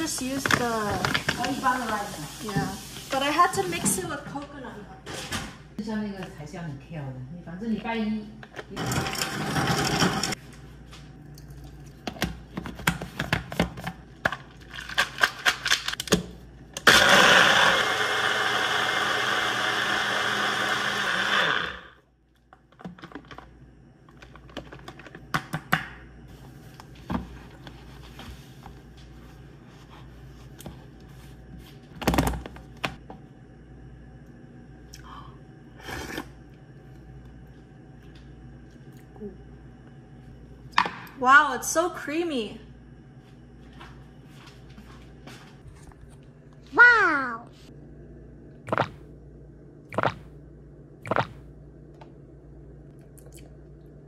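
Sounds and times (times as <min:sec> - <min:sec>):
electric blender running: 0:08.8 - 0:10.4, 0:16.8 - 0:22.1.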